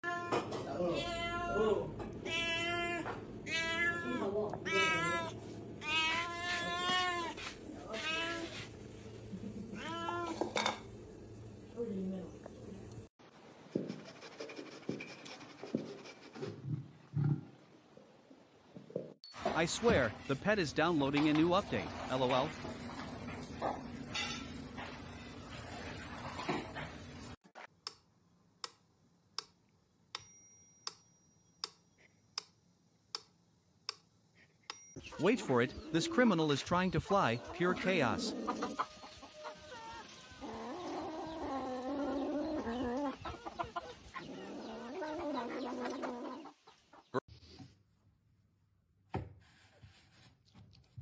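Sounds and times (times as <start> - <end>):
cat meowing: 0.0 - 8.5.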